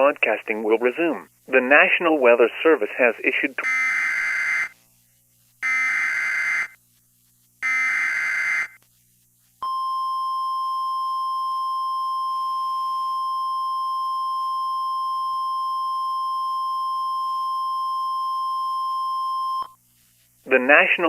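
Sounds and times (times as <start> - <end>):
steady high-pitched alarm tone: 3.6 - 4.8, 5.6 - 6.8, 7.6 - 8.8.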